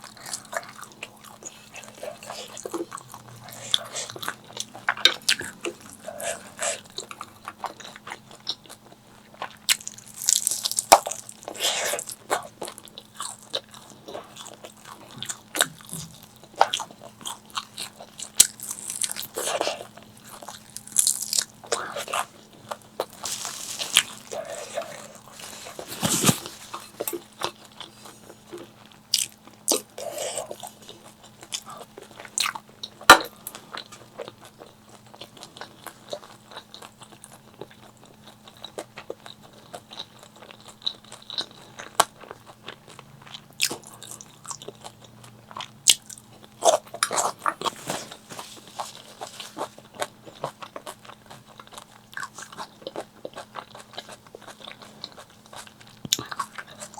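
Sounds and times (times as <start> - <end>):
faint steady hum: 0.0 - 56.9
crisp crunching bites: 9.7 - 12.1, 18.4 - 27.6.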